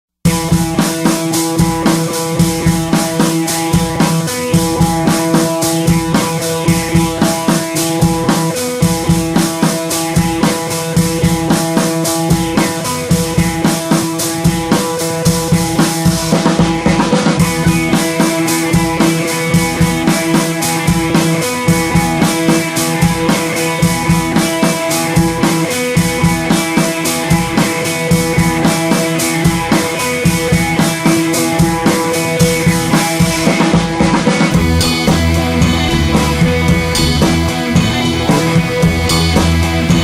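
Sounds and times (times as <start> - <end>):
drum kit steady beat: 0.2 - 40.0
guitar: 0.2 - 40.0
sustained chords: 34.6 - 40.0.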